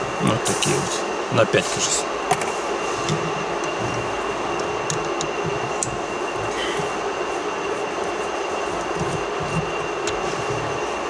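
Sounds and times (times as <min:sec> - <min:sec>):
mechanical hum with high whine: 0:00.0 - 0:11.0.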